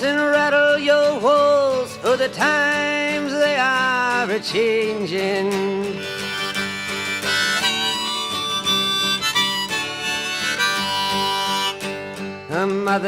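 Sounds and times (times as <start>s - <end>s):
guitar accompaniment: 0.0s - 13.0s
harmonica melody: 5.3s - 12.6s.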